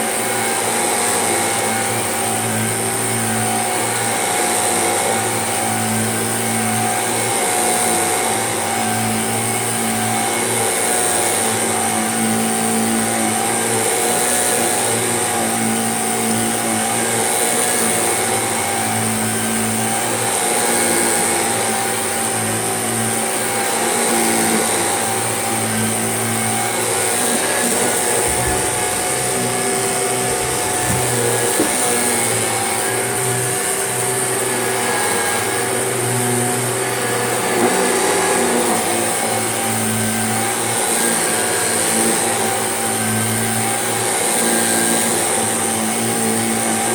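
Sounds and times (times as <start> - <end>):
vacuum cleaner running: 0.0 - 46.9.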